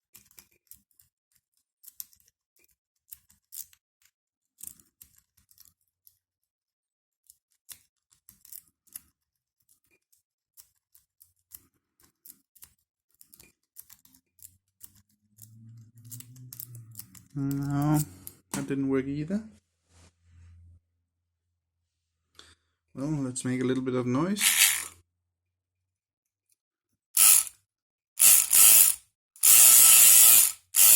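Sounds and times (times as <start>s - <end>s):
lock pick clicking and scraping: 24.4s - 25.0s.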